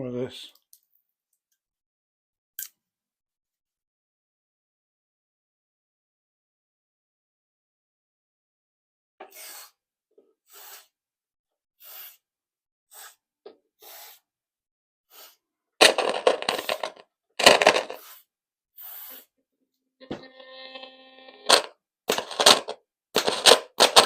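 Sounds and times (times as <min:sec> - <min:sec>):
scratchy crackling from speakers: 0:21.4 - 0:24.0.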